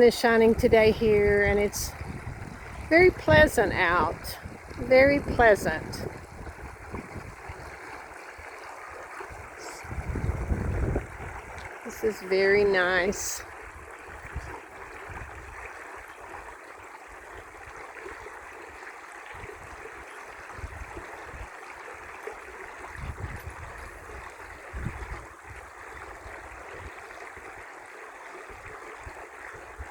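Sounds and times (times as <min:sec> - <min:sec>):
wind rumble on microphone: 0:00.0 - 0:08.1, 0:09.3 - 0:15.7, 0:19.3 - 0:21.6, 0:22.8 - 0:27.6
lake water rushing: 0:00.0 - 0:29.9.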